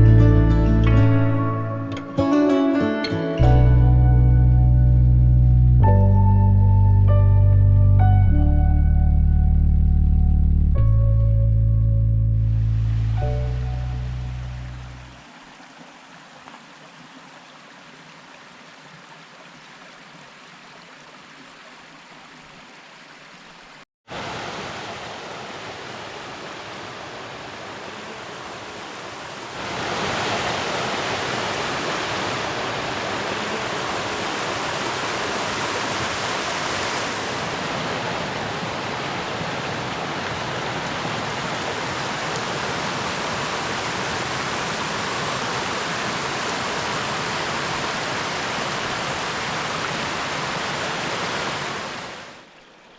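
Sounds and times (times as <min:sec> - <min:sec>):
rushing water: 0:12.5 - 0:52.9.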